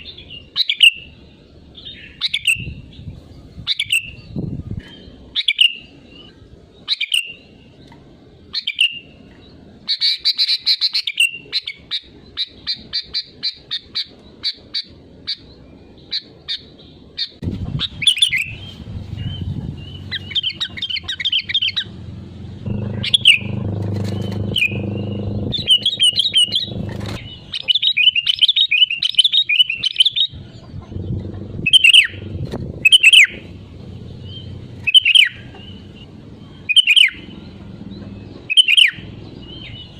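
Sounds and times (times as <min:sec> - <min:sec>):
bird chattering notes: 0:16.1 - 0:37.6
low rumble: 0:17.4 - 0:27.5, 0:30.3 - 0:36.7
bird singing whistled phrases: 0:24.5 - 0:30.4, 0:31.7 - 0:33.5, 0:34.2 - 0:37.4, 0:38.4 - 0:39.9.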